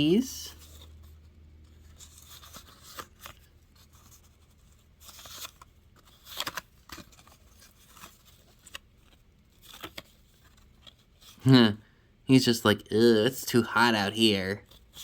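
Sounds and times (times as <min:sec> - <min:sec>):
paper rustling and sliding: 0:00.1 - 0:11.4.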